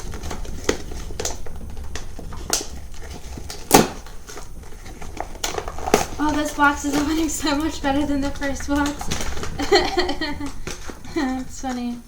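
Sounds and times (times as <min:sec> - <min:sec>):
box clicks and crackles: 0:00.0 - 0:12.0.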